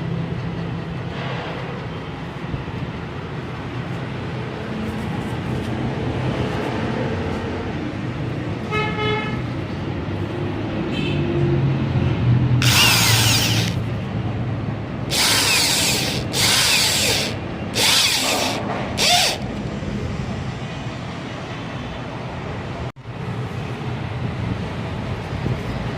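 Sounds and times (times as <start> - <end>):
power tool hissing on steel: 12.6 - 13.8, 15.1 - 19.4.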